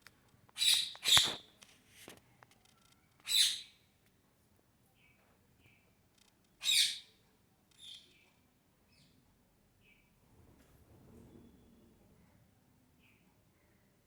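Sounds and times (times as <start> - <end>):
parrot chirping softly: 2.6 - 3.9, 4.9 - 9.2.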